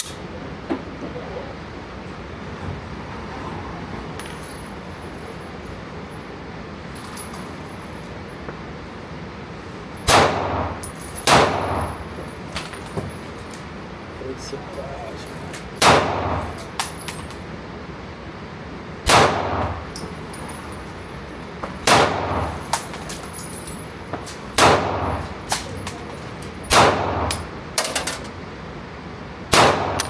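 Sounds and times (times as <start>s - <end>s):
gunshots: 10.1s - 11.9s, 15.8s - 16.6s, 19.1s - 19.8s, 21.8s - 22.6s, 24.6s - 25.3s, 26.7s - 27.4s, 29.5s - 30.0s.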